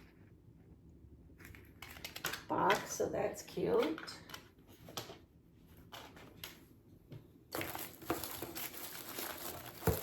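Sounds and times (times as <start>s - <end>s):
packaging crinkling: 7.5s - 10.0s.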